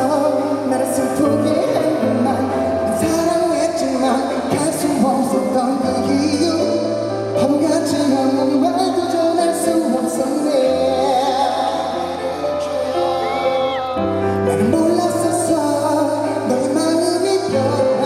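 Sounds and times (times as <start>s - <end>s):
live pop song: 0.0s - 18.0s.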